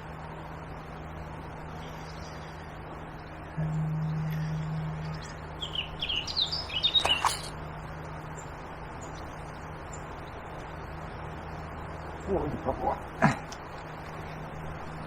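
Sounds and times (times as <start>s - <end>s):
low steady hum: 0.0s - 15.0s
small bird chirping: 3.6s - 10.4s.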